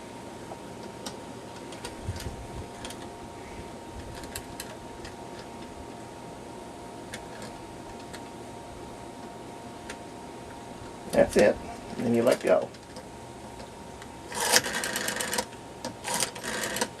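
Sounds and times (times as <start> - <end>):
rotary phone dial clicking: 4.1 - 5.5, 14.3 - 17.0.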